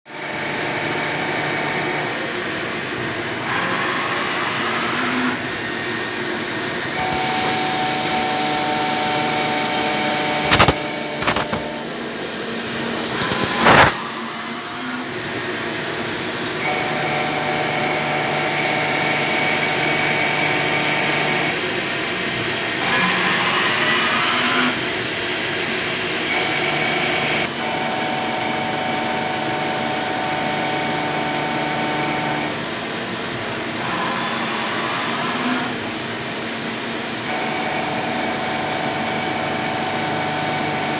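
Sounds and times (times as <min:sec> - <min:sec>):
milling machine whine: 0:00.1 - 0:40.9
loud hissing: 0:12.2 - 0:15.9.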